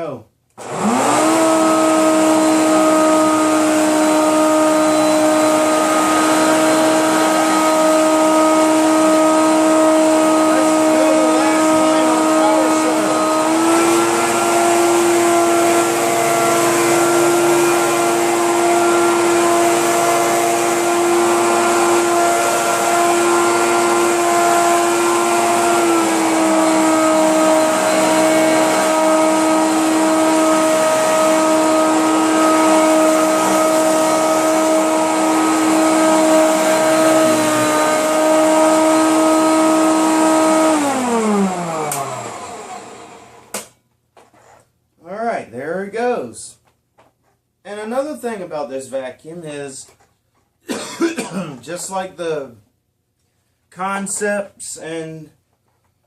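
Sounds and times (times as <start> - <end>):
upright vacuum cleaner running: 0.6 - 43.7.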